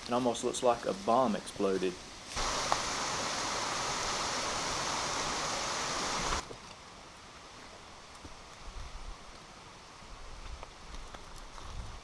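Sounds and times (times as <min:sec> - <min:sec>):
mountain stream rushing: 0:02.3 - 0:06.4.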